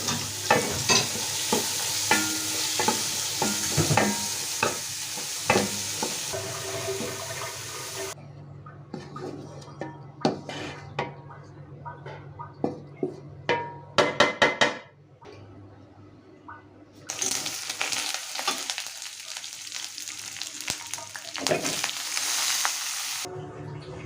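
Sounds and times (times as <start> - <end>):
metal utensil clinking on pan: 0.0 - 4.8
food sizzling in hot oil: 0.0 - 8.2, 17.1 - 23.3.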